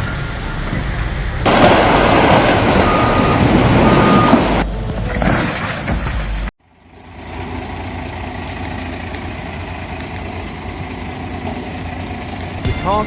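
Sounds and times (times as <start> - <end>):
vehicle engine rumbling: 0.0 - 13.0
loud noise: 1.5 - 4.8.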